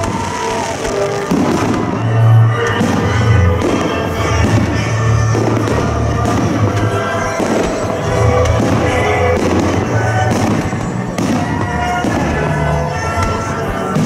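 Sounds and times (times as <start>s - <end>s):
fireworks bangs and crackles: 0.0s - 14.0s
loud festive music with bass: 0.0s - 14.0s.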